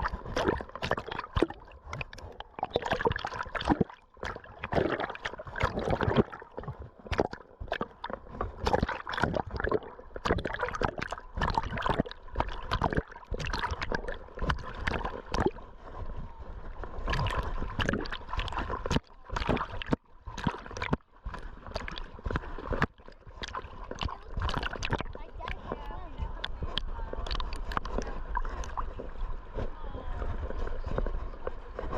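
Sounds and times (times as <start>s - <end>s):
bumps and scrapes: 0.0s - 31.9s.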